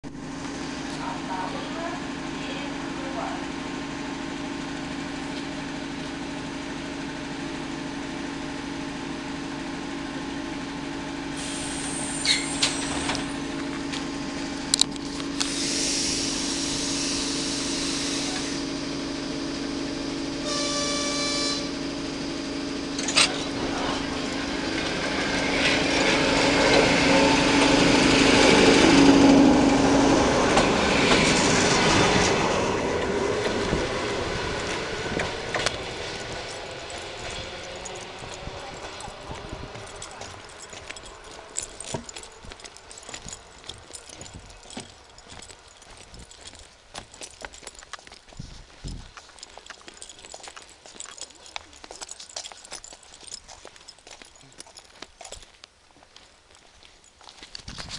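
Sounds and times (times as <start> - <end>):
rumble of train wheels and motors: 0.0 - 57.9
electric train hum: 0.1 - 47.6
train horn blast: 20.4 - 21.9.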